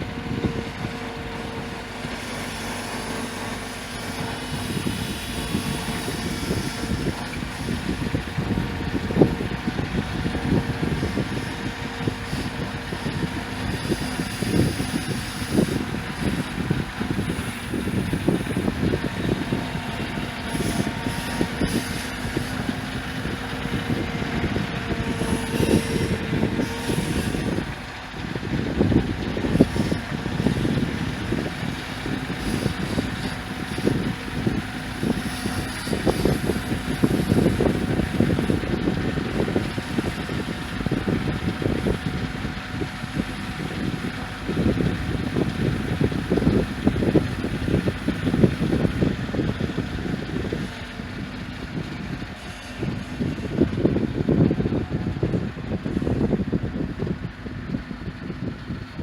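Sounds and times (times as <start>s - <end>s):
tractor engine running: 0.0s - 59.0s.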